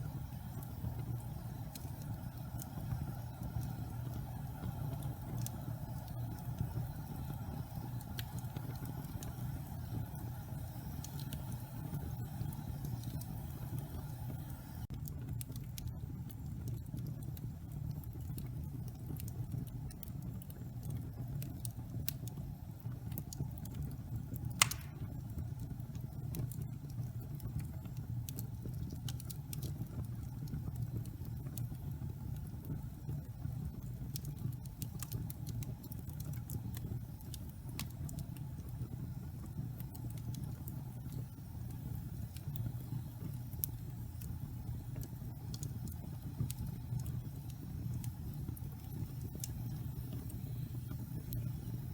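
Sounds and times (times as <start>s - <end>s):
fire rumbling and crackling: 0.0s - 51.9s
sharp loud pop: 24.6s - 25.0s.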